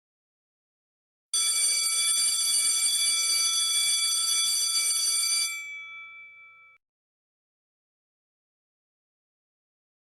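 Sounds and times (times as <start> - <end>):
electric alarm bell ringing: 1.4 - 6.8.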